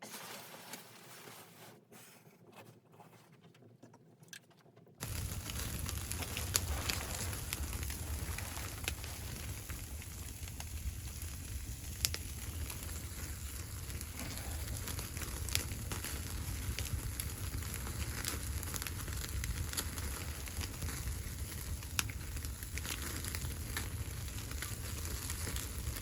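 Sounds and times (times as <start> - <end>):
low rumble: 5.0 - 18.0
sharp fire pops: 5.0 - 26.0
wood fire crackling: 5.0 - 26.0.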